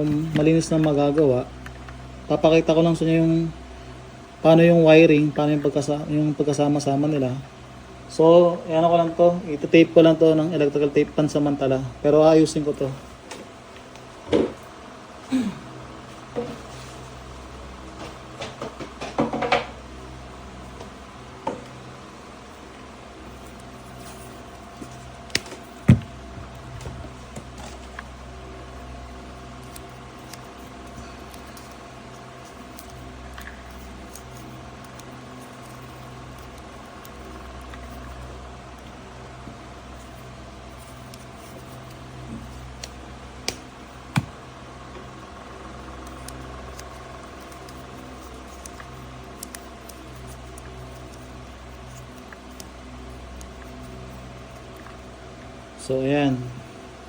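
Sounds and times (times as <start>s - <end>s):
low electrical hum: 0.0s - 57.0s
clicks and taps handling wiring: 29.5s - 38.2s, 45.8s - 55.0s.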